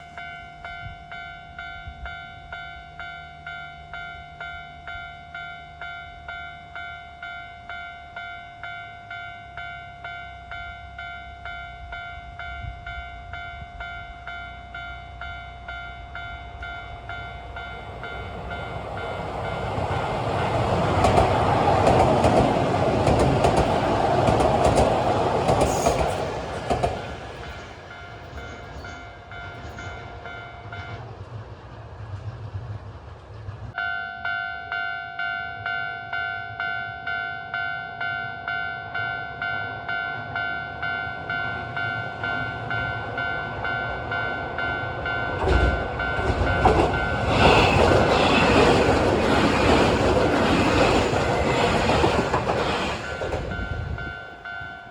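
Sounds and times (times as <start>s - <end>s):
level-crossing warning bell: 0.0s - 31.2s, 33.8s - 54.9s
electric train passing: 0.0s - 54.9s
train wheels clicking over rail joints: 17.4s - 30.0s, 45.3s - 54.4s.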